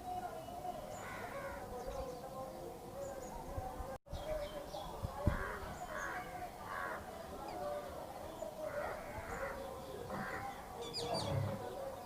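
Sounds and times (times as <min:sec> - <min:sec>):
small birds chirping: 0:00.0 - 0:12.0
crows cawing: 0:01.0 - 0:01.7, 0:05.3 - 0:07.3, 0:08.6 - 0:11.2.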